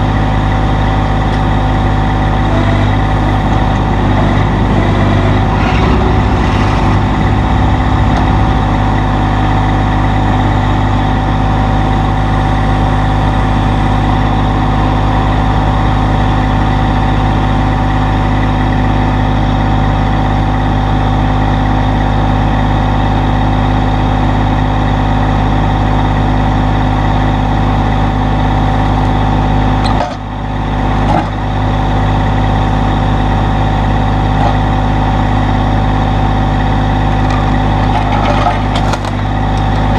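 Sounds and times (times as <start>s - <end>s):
tractor diesel engine running: 0.0s - 39.9s
high whine: 1.3s - 20.0s.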